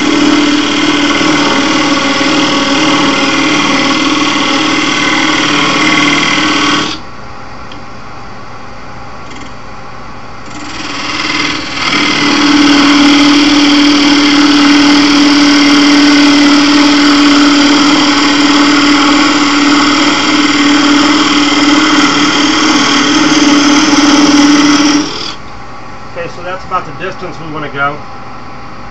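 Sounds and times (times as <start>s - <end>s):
turning tool cutting wood: 0.0s - 7.0s, 10.4s - 25.4s
wood lathe humming: 0.0s - 7.0s, 10.4s - 25.4s.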